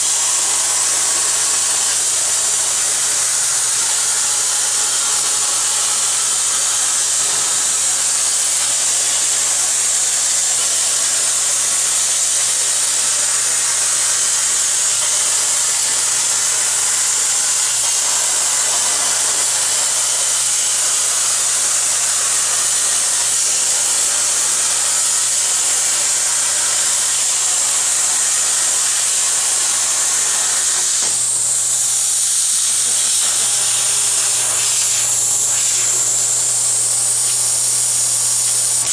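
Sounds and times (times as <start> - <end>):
plasma torch hissing: 10.0 - 38.9.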